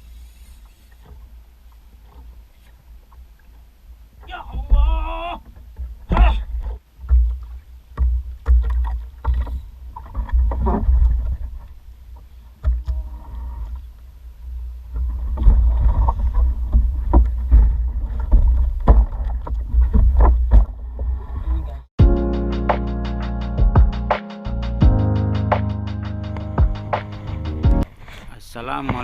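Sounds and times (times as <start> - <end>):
boat low rumble: 0.0 - 28.1
knocks and bumps: 4.3 - 7.4.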